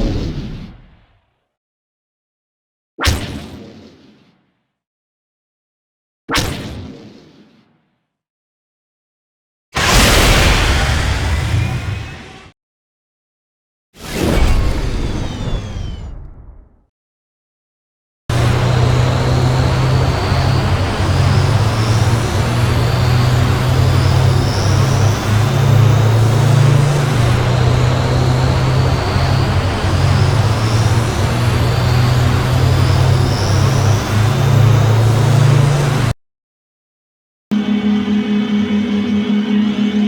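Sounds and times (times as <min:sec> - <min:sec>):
steady engine hum: 0:18.3 - 0:36.1, 0:37.5 - 0:40.0
high whines sweeping upward: 0:18.3 - 0:36.2, 0:37.5 - 0:40.0
loud engine drone: 0:18.3 - 0:36.2, 0:37.5 - 0:40.0.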